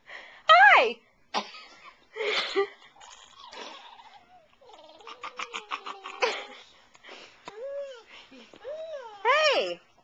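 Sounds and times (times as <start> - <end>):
high-pitched vocal sounds: 3.4 - 6.7.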